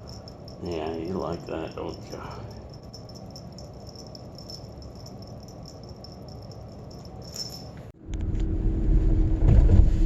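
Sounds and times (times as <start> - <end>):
faint rattling jingle: 0.0 - 7.9
low steady rumble: 0.0 - 10.0.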